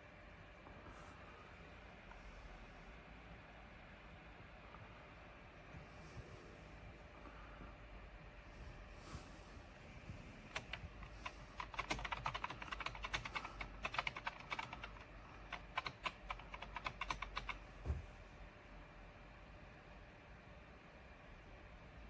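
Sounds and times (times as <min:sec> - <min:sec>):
typing on computer keyboard: 0:10.5 - 0:17.6.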